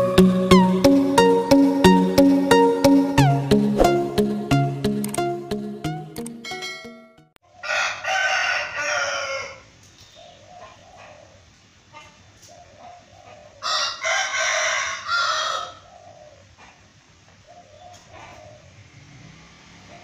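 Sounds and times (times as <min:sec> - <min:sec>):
rooster crowing: 0:07.4 - 0:09.7, 0:13.6 - 0:15.9.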